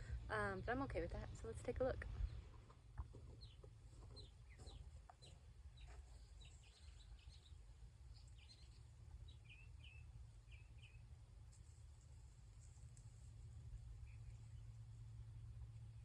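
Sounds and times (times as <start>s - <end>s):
birds chirping: 0.0s - 11.1s, 14.0s - 14.9s
low steady rumble: 0.0s - 16.0s.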